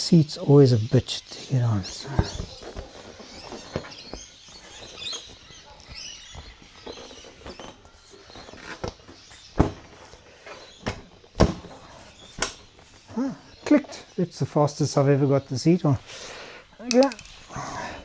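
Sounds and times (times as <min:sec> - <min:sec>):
faint bird chirps: 0:00.0 - 0:18.0
motorcycle seat knocking and clicking: 0:02.0 - 0:12.8
seat clunking into place: 0:06.9 - 0:12.8.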